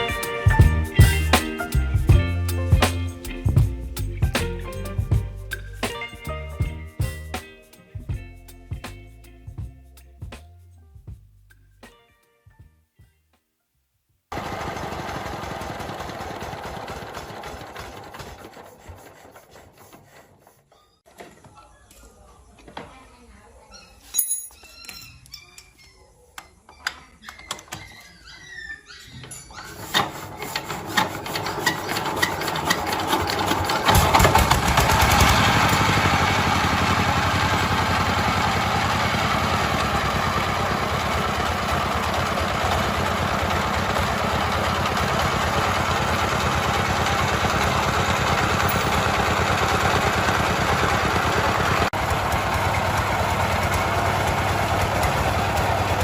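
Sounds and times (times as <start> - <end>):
engine starting and running: 14.3 - 18.7, 29.8 - 56.0.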